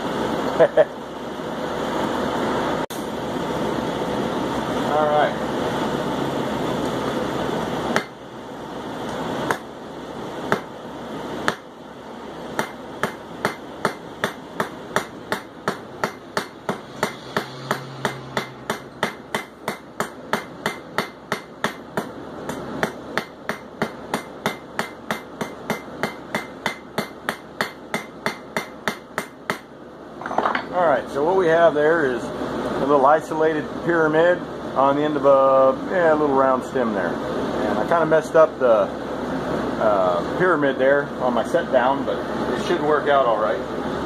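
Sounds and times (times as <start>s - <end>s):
hammer ringing on anvil: 12.6s - 29.7s.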